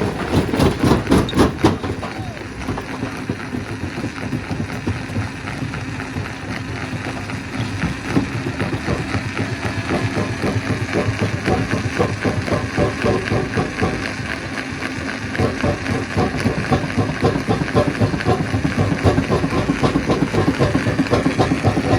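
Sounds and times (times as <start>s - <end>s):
machine drone: 0.0s - 21.9s.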